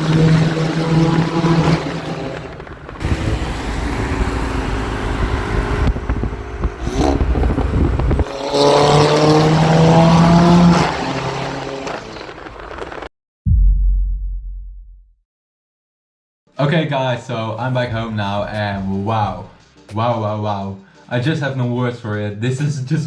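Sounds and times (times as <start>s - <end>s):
loud car engine exhaust: 0.0s - 12.8s.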